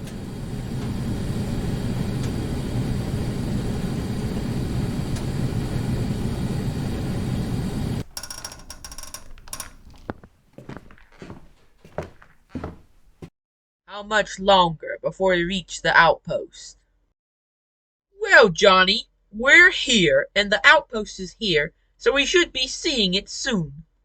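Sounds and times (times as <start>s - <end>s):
faint clicks and knocks: 8.0s - 13.3s.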